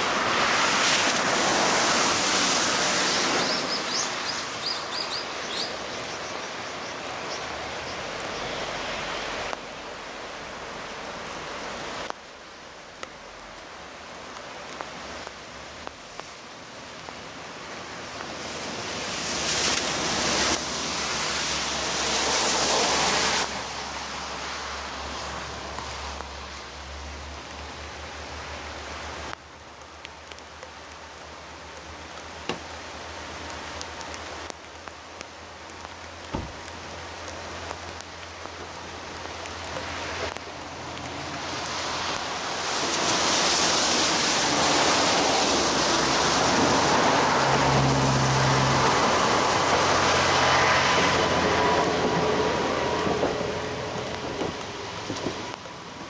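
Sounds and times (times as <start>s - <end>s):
diesel railcar passing: 40.6s - 55.1s.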